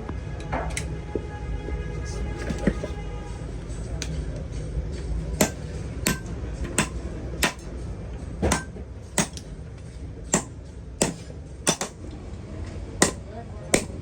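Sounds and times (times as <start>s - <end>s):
hammer striking metal: 5.4s - 7.7s, 8.4s - 9.5s, 10.3s - 12.0s, 13.0s - 14.0s.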